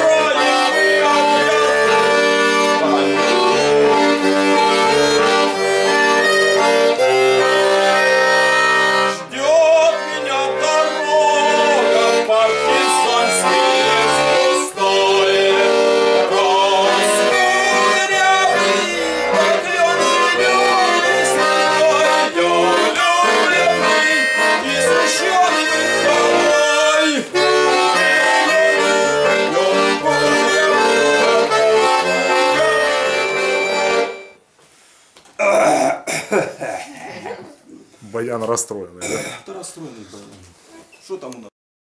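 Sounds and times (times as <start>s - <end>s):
person talking: 0.0s - 4.2s, 36.9s - 41.5s
button accordion playing folk tune: 0.0s - 34.5s.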